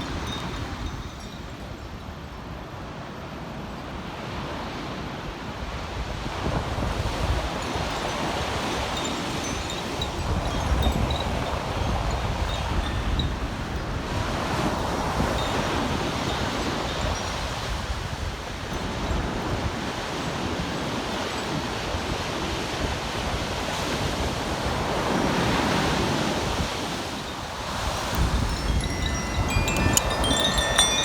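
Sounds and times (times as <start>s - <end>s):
sea surf washing on beach: 4.0s - 31.0s
wind buffeting microphone: 5.8s - 31.0s
high chime notes: 28.2s - 31.0s.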